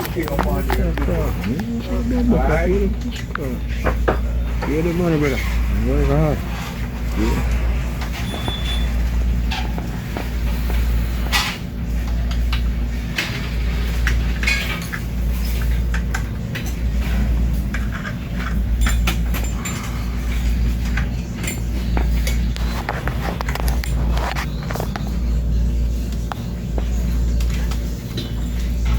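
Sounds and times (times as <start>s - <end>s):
tools and bike parts clinking: 0.0s - 6.5s, 7.5s - 28.9s
steady low hum: 0.0s - 28.9s.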